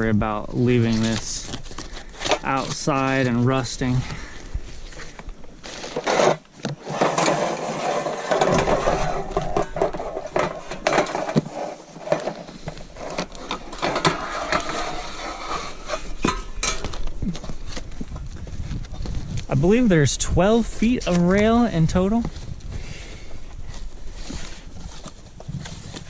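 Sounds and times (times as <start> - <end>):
metal scraping against packaging: 0.6 - 4.0, 4.9 - 17.1.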